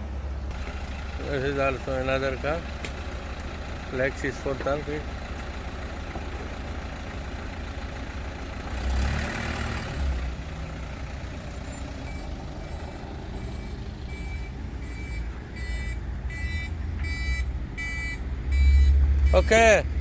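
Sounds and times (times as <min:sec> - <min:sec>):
vehicle engine running: 0:00.0 - 0:20.0
reversing warning beeps: 0:11.4 - 0:19.9.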